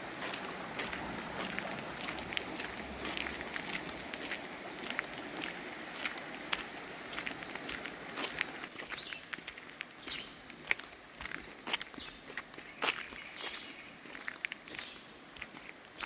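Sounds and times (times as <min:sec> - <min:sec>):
steady rushing noise: 0:00.0 - 0:08.6
footsteps crunching on trail: 0:00.0 - 0:16.0.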